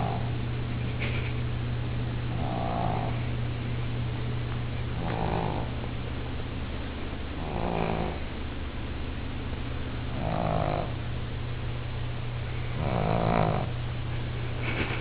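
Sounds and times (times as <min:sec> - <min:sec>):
pet snoring: 0:00.0 - 0:00.3, 0:02.3 - 0:03.4, 0:05.0 - 0:05.8, 0:07.4 - 0:08.3, 0:10.1 - 0:11.0, 0:12.7 - 0:13.8
steady low hum: 0:00.0 - 0:15.0.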